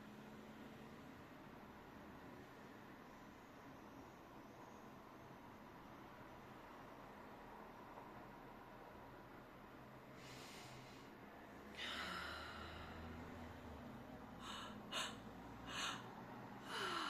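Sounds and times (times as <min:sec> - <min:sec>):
person breathing: 0:10.1 - 0:11.2, 0:11.8 - 0:17.0
sharp breaths through nose: 0:10.1 - 0:11.2, 0:14.4 - 0:17.0.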